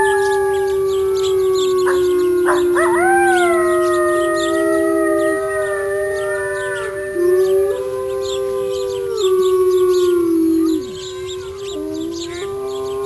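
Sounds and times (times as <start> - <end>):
wolves howling: 0.0 - 13.0.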